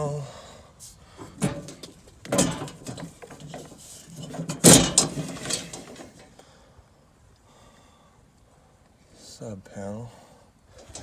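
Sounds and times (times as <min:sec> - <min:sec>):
metallic bang: 0:01.2 - 0:06.2
metal panel door rattling: 0:01.2 - 0:06.3.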